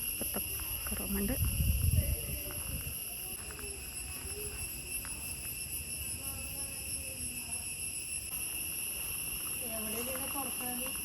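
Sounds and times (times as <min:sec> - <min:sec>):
insect chorus drone: 0:00.0 - 0:11.0.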